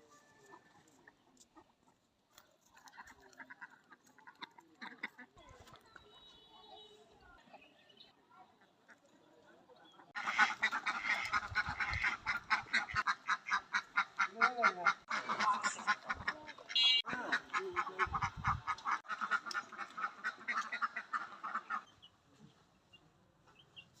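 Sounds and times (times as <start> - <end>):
ducks quacking: 2.7 - 5.5, 8.4 - 21.9.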